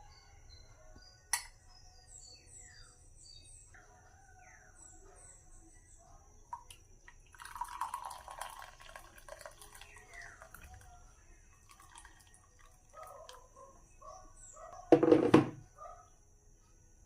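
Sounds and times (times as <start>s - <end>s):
liquid pouring and splashing: 6.6s - 13.4s
faint knocks: 14.9s - 15.6s.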